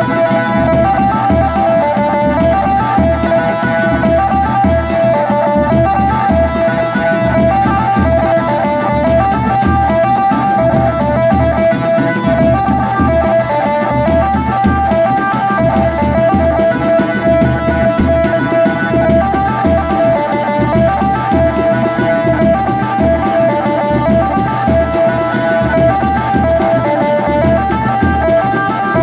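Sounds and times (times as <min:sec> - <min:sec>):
plucked-string melody: 0:00.0 - 0:29.0
steady drum beat: 0:00.0 - 0:29.0.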